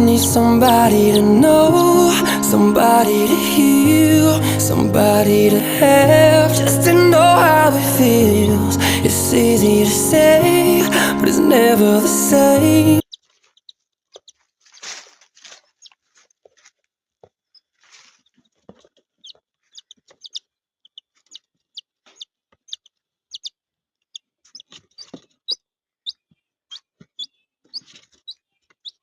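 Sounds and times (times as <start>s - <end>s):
birds chirping: 0.0s - 13.0s
soft rustles: 13.1s - 20.1s.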